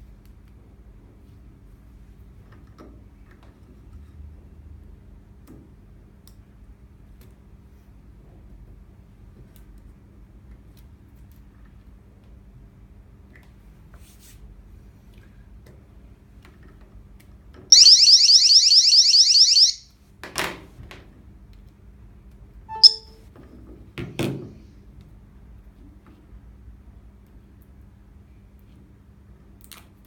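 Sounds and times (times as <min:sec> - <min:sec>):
alarm warbling chirps: 0:17.7 - 0:19.8, 0:22.7 - 0:23.1
short beep: 0:17.7 - 0:19.8, 0:22.7 - 0:23.2.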